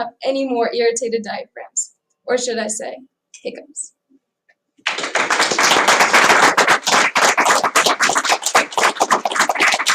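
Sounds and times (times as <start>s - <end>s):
crowd applauding: 4.8s - 9.9s.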